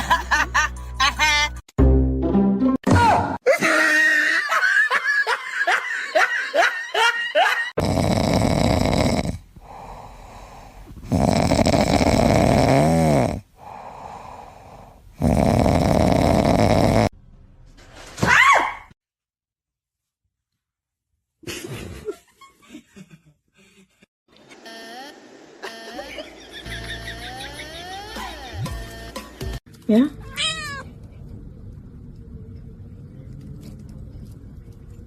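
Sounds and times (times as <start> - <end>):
loud rasping breaths: 7.8 - 17.1.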